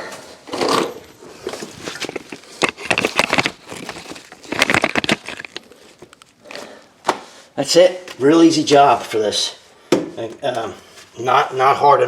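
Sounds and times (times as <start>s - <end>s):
hand tools clicking on metal: 1.8s - 6.3s.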